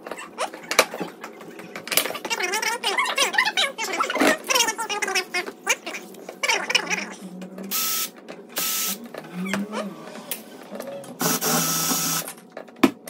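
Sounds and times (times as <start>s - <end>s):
cordless drill whining: 11.2s - 12.2s.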